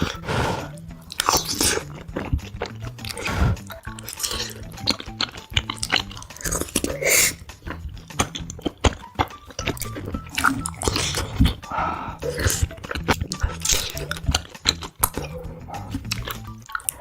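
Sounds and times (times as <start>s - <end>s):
background music: 0.0s - 17.0s
chewing: 0.0s - 17.0s
wet mouth clicks: 0.0s - 17.0s.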